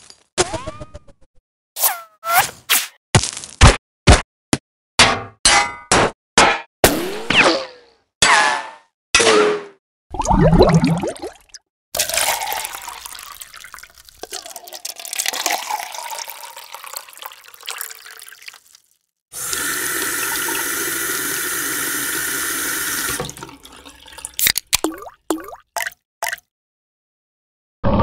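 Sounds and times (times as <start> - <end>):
water splashing and gurgling: 10.1 - 18.7, 23.2 - 26.4
tap water running into sink: 19.4 - 26.4.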